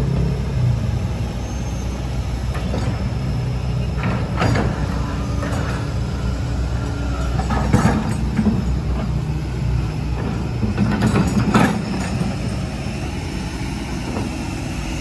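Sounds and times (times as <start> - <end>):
excavator diesel engine running: 0.0 - 15.0.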